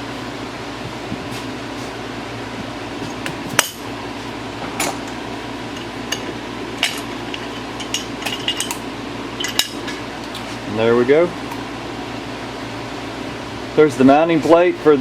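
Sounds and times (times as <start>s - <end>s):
metal tools clinking: 5.8s - 8.8s, 9.4s - 10.0s.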